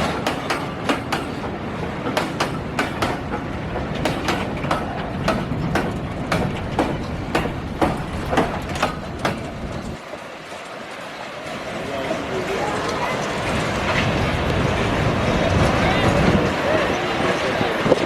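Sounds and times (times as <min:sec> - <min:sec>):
train rumble: 0:00.0 - 0:18.0
train wheels clacking: 0:00.0 - 0:18.0.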